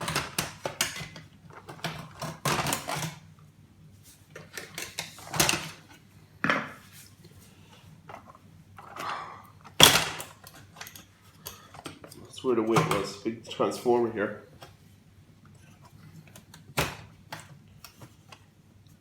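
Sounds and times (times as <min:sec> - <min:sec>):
typewriter parts clattering and scraping: 0:00.0 - 0:03.2, 0:09.8 - 0:13.2.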